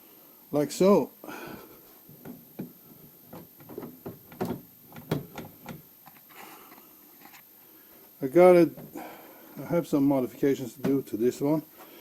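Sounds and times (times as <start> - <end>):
plastic knocks and clicks: 2.2 - 5.8.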